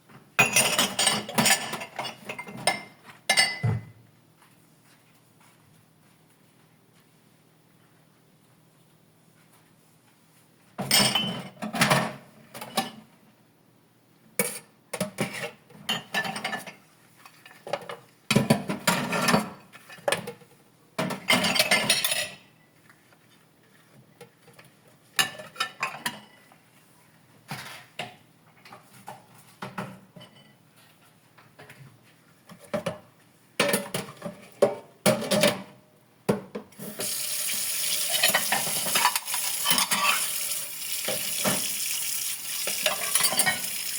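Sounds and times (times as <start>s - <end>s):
dishes clattering: 0.4s - 3.9s, 38.0s - 41.8s, 42.6s - 43.9s
tap water running: 36.8s - 43.9s
water splashing in sink: 36.8s - 43.9s.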